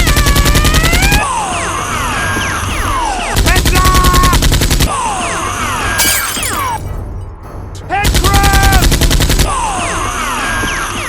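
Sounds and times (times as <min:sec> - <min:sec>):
rapid automatic gunfire: 0:00.0 - 0:01.2, 0:03.4 - 0:04.9, 0:08.0 - 0:09.5.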